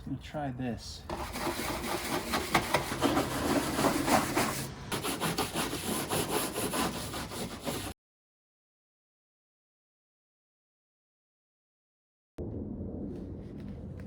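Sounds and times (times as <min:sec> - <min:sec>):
scrubbing on plastic: 0:01.1 - 0:07.9.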